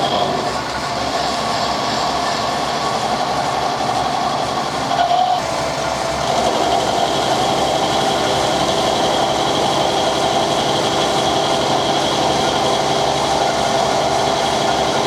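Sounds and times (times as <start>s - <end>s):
machine tool cutting steel: 0.0s - 15.0s.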